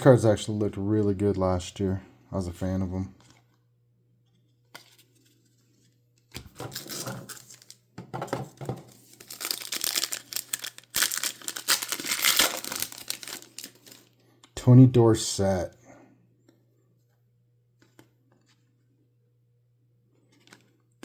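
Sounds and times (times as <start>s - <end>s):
wrapper tearing and crinkling: 6.5s - 7.8s, 8.8s - 14.1s.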